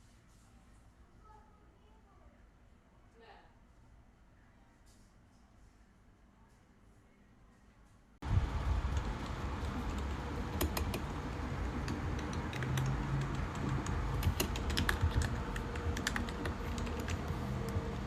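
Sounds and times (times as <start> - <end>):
mechanical keyboard typing: 8.7 - 18.0.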